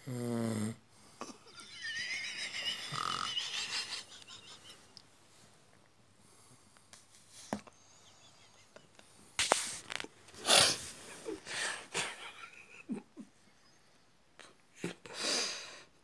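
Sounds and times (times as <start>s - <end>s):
person snoring: 2.9s - 3.3s.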